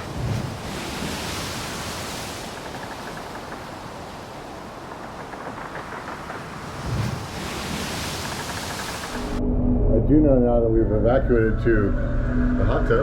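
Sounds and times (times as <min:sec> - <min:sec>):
wind buffeting microphone: 0:00.0 - 0:09.4.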